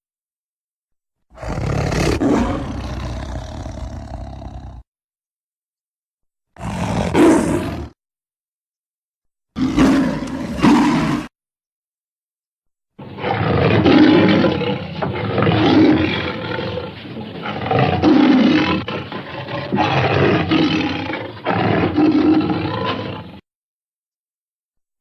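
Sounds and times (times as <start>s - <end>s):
tiger roaring and growling: 1.3s - 4.8s, 6.6s - 8.0s, 9.6s - 11.3s, 13.0s - 23.4s.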